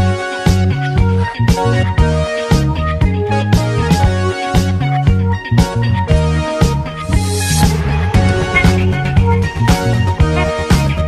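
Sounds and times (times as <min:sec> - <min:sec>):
upbeat background music: 0:00.0 - 0:11.0.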